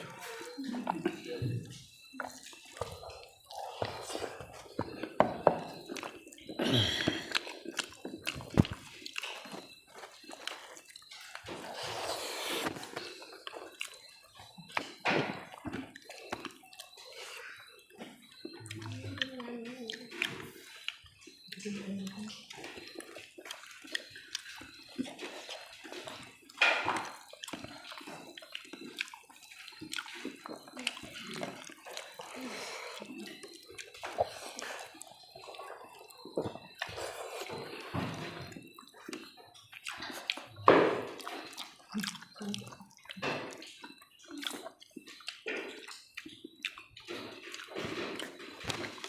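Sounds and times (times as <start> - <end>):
wet chewing and smacking: 0.0 - 49.0.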